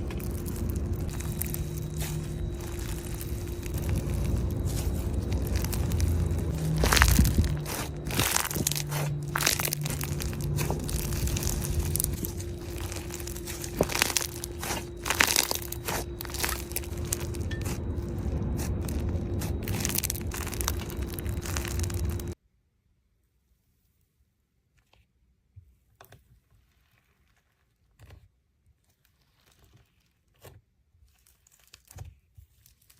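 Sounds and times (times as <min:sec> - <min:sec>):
slime squeezed by hand: 0:00.0 - 0:22.3.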